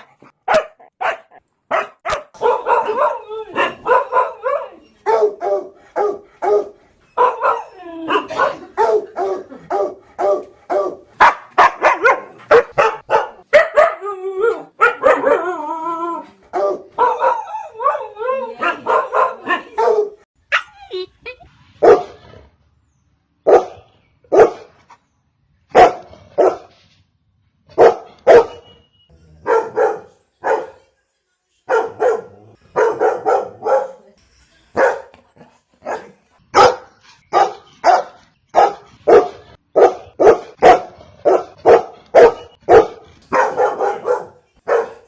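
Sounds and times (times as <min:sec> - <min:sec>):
dog barking: 0:00.0 - 0:14.0, 0:14.8 - 0:15.4, 0:16.5 - 0:18.0, 0:18.6 - 0:20.7, 0:21.8 - 0:22.1, 0:23.4 - 0:24.7, 0:25.7 - 0:26.7, 0:27.8 - 0:28.6, 0:29.4 - 0:30.8, 0:31.7 - 0:34.1, 0:34.8 - 0:45.0.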